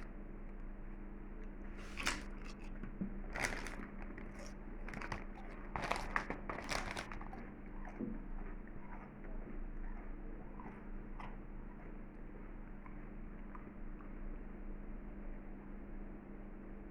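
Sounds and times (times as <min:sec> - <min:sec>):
faint steady hum: 0:00.0 - 0:16.9
potato chip bag crinkling: 0:01.8 - 0:07.5.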